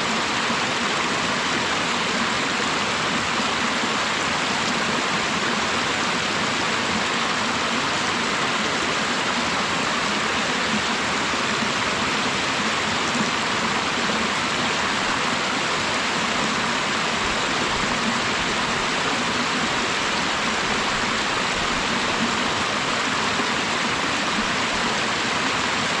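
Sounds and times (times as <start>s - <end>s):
running mountain water: 0.0s - 26.0s.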